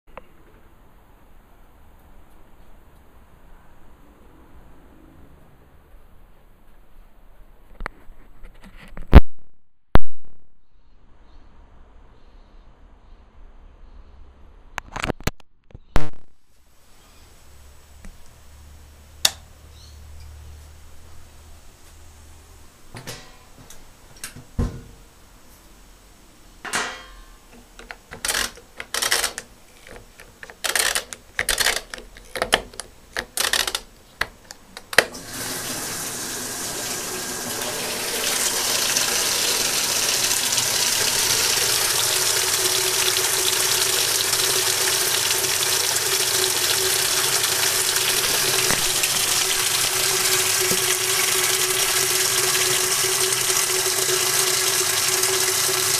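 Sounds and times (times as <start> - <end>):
sharp clicks and knocks: 27.5 - 35.2
water rushing into washing machine: 35.0 - 55.9.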